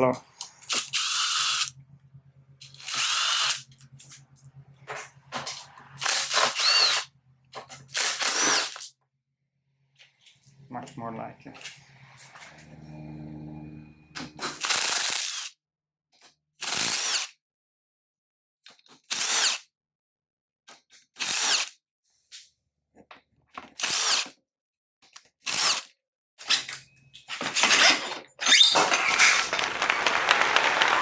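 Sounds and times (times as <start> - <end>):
cordless drill driving bolts: 2.7 - 4.2, 4.9 - 8.8.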